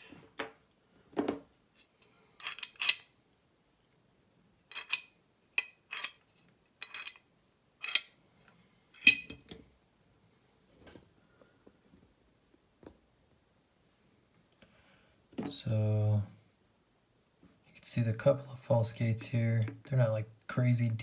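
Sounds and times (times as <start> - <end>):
metal lock parts clinking: 2.4 - 3.1, 4.7 - 6.2, 6.8 - 7.2, 7.8 - 8.2, 9.0 - 9.6.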